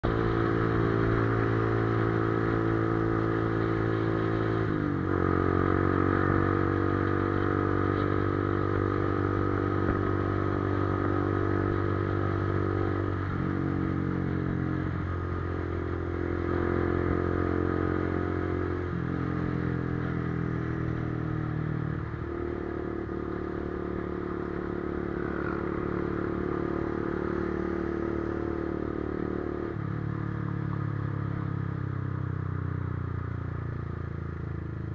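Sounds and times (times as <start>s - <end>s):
motorcycle engine running: 0.0s - 34.9s.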